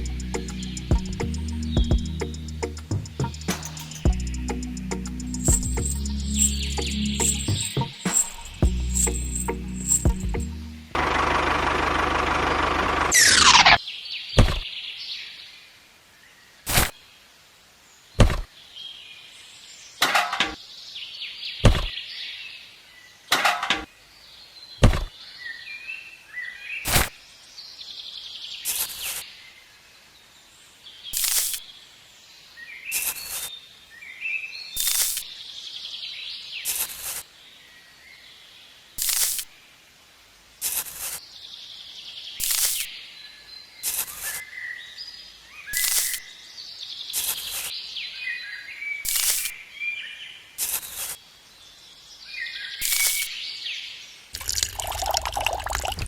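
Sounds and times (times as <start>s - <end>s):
birds chirping: 0.0s - 14.8s, 54.4s - 56.0s.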